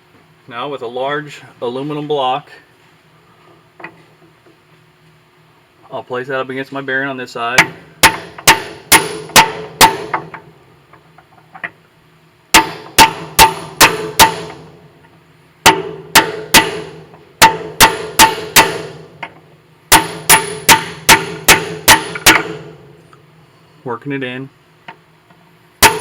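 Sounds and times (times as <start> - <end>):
hammer striking metal block: 7.6 - 10.4, 12.5 - 14.7, 15.6 - 19.1, 19.9 - 22.9.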